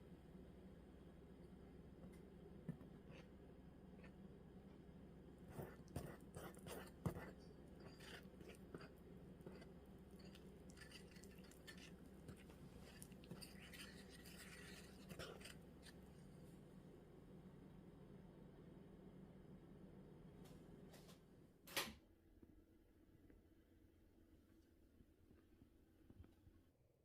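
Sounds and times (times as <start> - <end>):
low steady hum: 0.0 - 27.0
soft scraping and rustling: 5.5 - 16.6.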